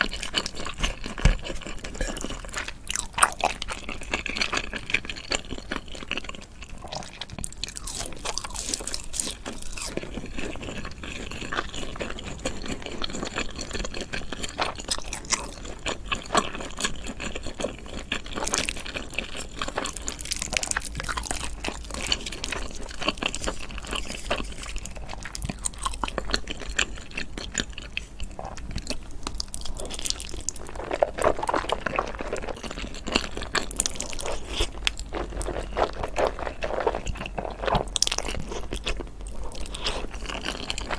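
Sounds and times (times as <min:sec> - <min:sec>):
person chewing: 0:00.0 - 0:40.9.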